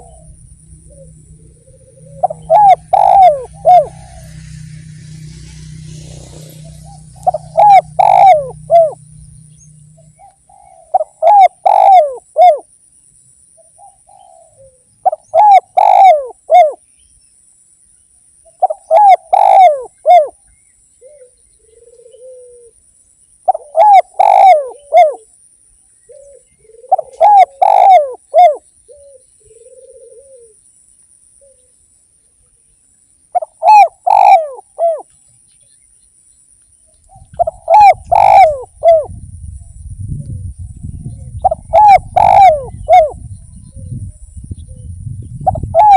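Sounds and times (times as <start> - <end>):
dove cooing: 0.0 - 4.7, 5.3 - 12.7, 13.7 - 16.8, 18.6 - 20.4, 21.0 - 22.8, 23.5 - 25.3, 26.1 - 30.6, 33.3 - 35.1, 37.1 - 39.2, 40.1 - 45.9.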